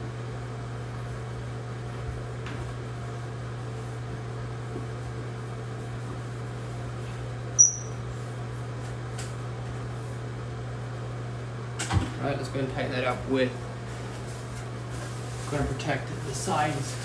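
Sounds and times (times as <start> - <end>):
steady low hum: 0.0 - 17.0
high metallic ping: 7.6 - 8.0.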